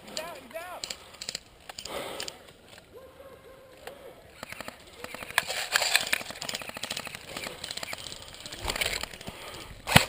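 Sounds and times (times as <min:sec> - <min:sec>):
airsoft rifle rapid firing clicks: 0:04.3 - 0:10.0.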